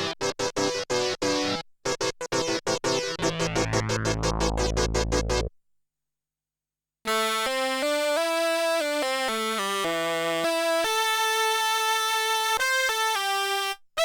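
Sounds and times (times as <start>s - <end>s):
held low synth bass note: 3.2s - 5.4s
sustained synthesizer notes: 3.2s - 5.5s
synthesizer staccato chords: 3.2s - 5.5s.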